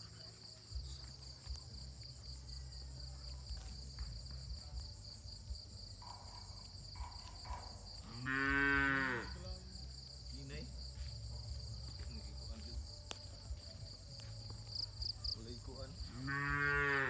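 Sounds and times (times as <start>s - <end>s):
crickets chirping: 0.0s - 17.0s
cow mooing: 8.1s - 9.4s, 16.1s - 17.0s.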